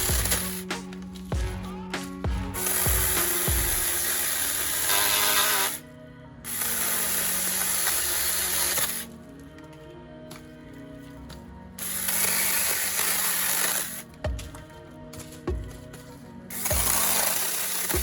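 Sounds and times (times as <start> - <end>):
small chainsaw running: 0.0 - 0.7, 2.5 - 5.8, 6.5 - 9.1, 11.8 - 14.0, 16.5 - 18.0
background music: 0.0 - 18.0.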